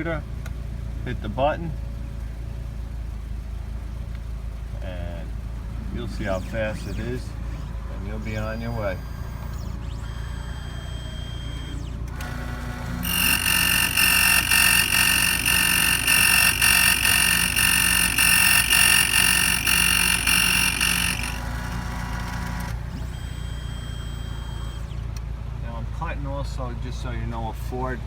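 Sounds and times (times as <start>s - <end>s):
key cutting machine motor: 11.8s - 24.9s
high-pitched cutting whine: 12.2s - 24.9s.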